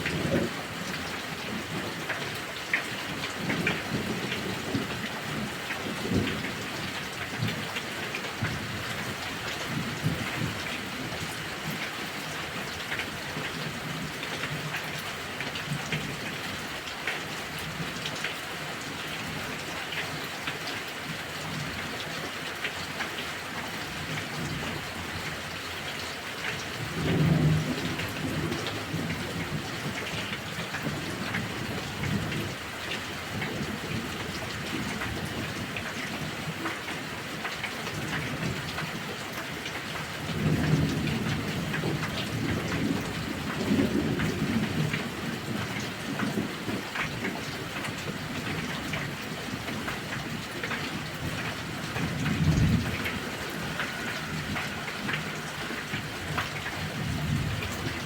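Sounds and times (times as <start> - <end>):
heavy rain: 0.0 - 58.0
raindrops ticking: 0.0 - 58.0
rolling thunder: 50.9 - 58.0.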